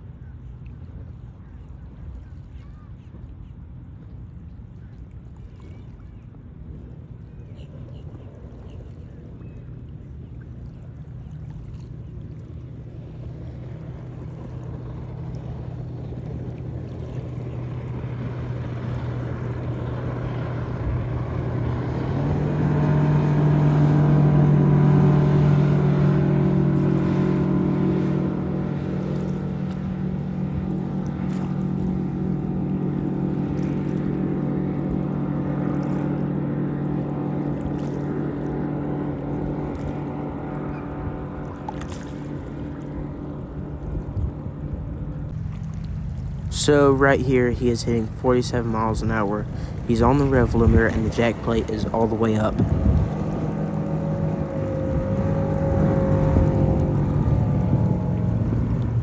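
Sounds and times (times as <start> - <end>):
outboard engine drone: 0.0 - 59.0
water rushing: 0.0 - 59.0
wind rush: 46.2 - 59.0.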